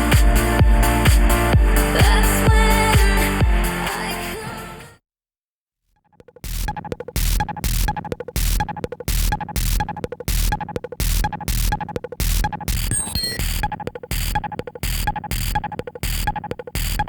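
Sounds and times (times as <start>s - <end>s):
electronic music with heavy beat: 0.0s - 4.8s, 6.4s - 17.0s
glitchy stutter: 6.3s - 17.0s.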